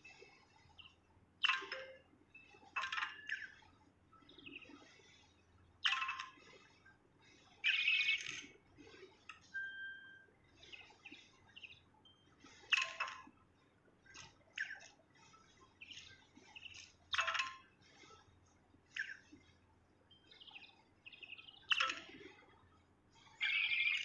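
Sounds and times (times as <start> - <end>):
bird chirps: 0.6 - 5.2, 7.6 - 13.2, 14.1 - 18.1, 18.9 - 19.5, 20.1 - 22.4, 23.2 - 24.0
whistled bird notes: 9.5 - 12.3, 23.4 - 24.0
songbird singing: 20.1 - 22.0.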